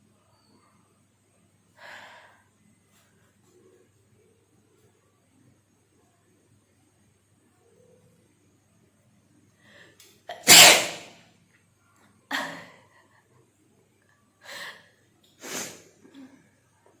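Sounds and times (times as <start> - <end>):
woman sneezing: 10.3 - 11.1.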